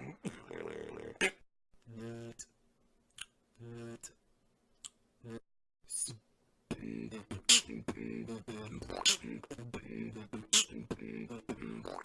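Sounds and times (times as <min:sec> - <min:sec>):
beatboxing: 0:05.9 - 0:12.0.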